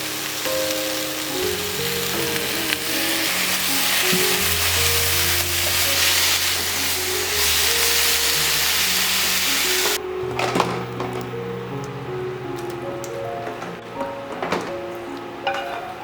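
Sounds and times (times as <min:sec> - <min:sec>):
food sizzling in a pan: 0:00.0 - 0:10.0
background music: 0:00.0 - 0:16.0.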